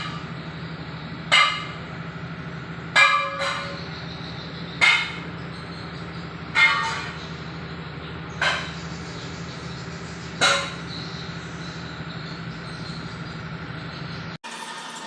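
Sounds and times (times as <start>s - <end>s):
hammer striking steel: 0.0s - 0.6s, 1.2s - 2.1s, 2.8s - 7.6s, 8.3s - 11.7s
low hum: 0.0s - 14.4s.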